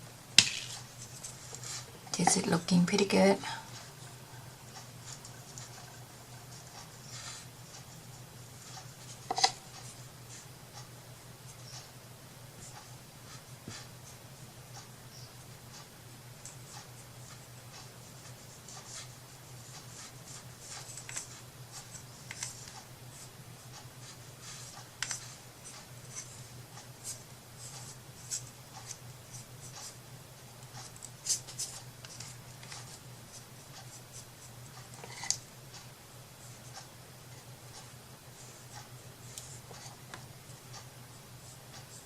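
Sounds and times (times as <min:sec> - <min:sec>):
steady low hum: 0:00.0 - 0:42.0
wooden pieces clicking and tapping: 0:00.4 - 0:00.9.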